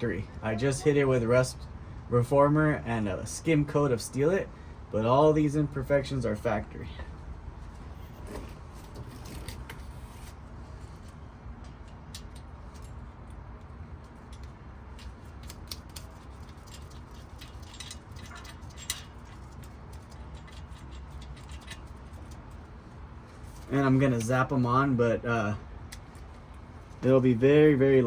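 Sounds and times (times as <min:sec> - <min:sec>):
low background rumble: 0:00.0 - 0:28.0
metallic clicks of tools: 0:14.2 - 0:22.6.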